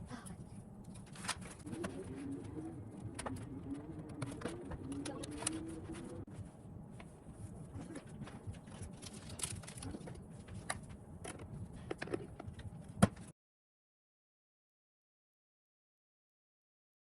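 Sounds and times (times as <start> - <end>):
clicks and knocks of objects handled: 7.9 - 13.3.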